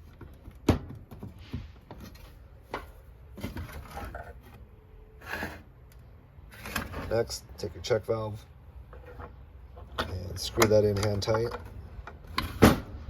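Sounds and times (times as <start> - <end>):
plastic parts knocking and clicking: 0.0 - 4.4, 8.9 - 13.0.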